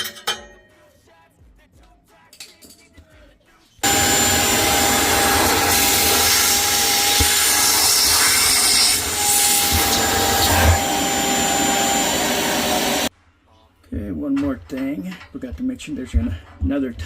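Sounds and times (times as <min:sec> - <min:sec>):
vacuum cleaner whine and suction: 0:03.8 - 0:13.1.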